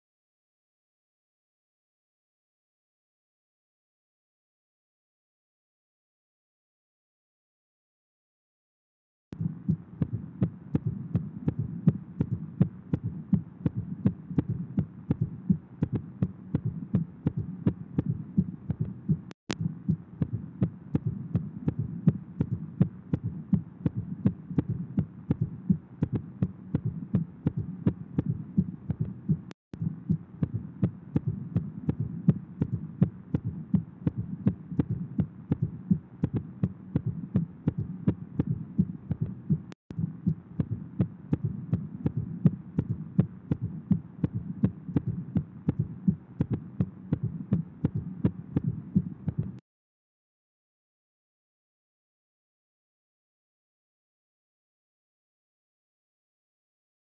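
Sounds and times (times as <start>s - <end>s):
heartbeats: 9.4s - 49.6s.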